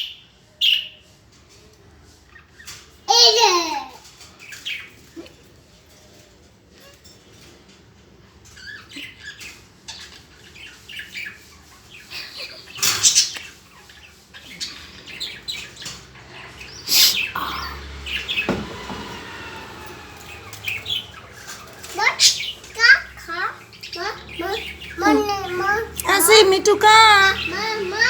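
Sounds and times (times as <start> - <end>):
birds chirping: 8.3 - 28.0.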